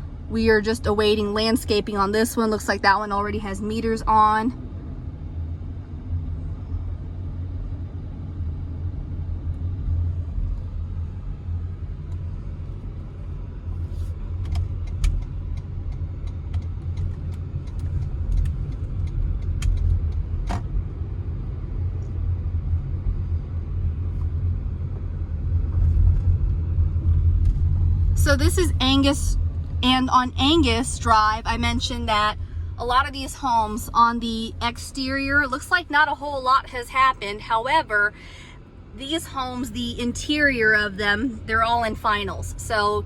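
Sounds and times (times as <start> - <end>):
car driving rumble from inside: 0.0 - 43.0
sharp ticks and clicks: 14.4 - 20.6.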